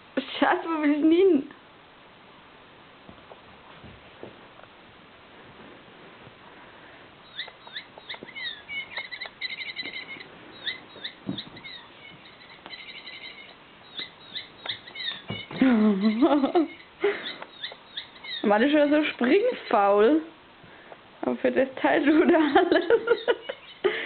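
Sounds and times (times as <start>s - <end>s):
squeaky toy squeaking: 7.3s - 15.6s.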